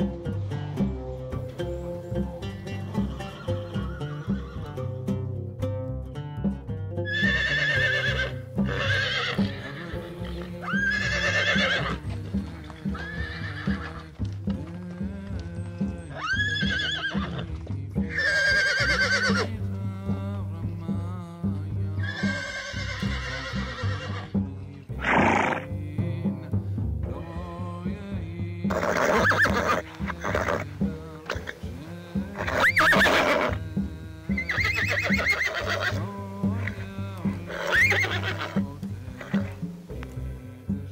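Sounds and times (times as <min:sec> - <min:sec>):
background music with a beat: 0:00.0 - 0:40.9
horse whinnying: 0:03.0 - 0:04.7, 0:07.1 - 0:12.1, 0:12.9 - 0:14.0, 0:16.1 - 0:17.4, 0:18.1 - 0:19.5, 0:22.0 - 0:24.3, 0:25.0 - 0:25.7, 0:28.7 - 0:31.6, 0:32.4 - 0:33.6, 0:34.4 - 0:36.8, 0:37.4 - 0:39.6.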